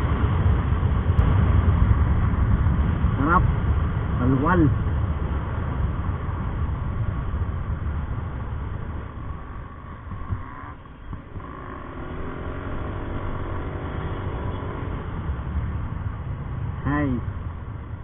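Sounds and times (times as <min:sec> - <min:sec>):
heavy low rumble: 0:00.0 - 0:18.0
scooter engine running: 0:07.0 - 0:16.6.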